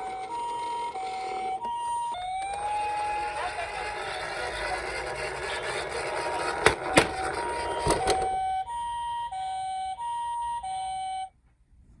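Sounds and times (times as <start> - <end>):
toy two-tone siren: 0.0 - 11.3
toy rattling rolling: 2.6 - 8.1.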